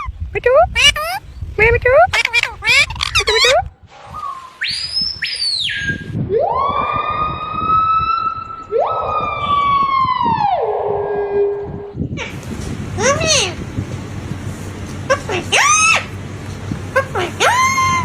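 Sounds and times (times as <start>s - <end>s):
siren-like wail: 4.1s - 12.0s.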